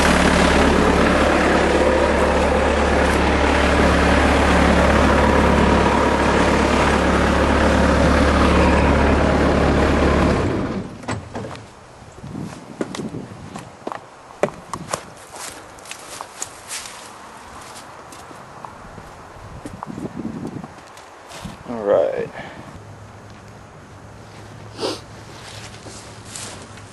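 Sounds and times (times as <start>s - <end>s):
diesel engine idling: 0.0s - 11.0s
light footsteps: 11.5s - 21.6s.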